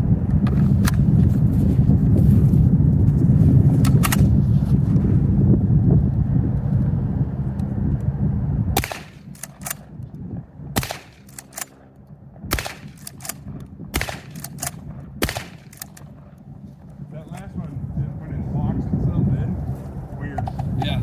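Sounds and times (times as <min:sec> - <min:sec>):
loud low rumble: 0:00.0 - 0:21.0
shotgun shots: 0:08.8 - 0:09.9, 0:10.8 - 0:11.8, 0:12.5 - 0:16.3.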